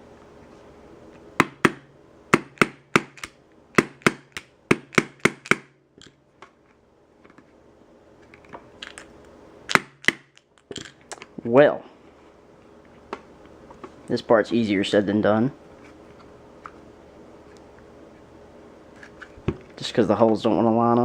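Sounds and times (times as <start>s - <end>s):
small hammer tapping: 2.4s - 6.1s.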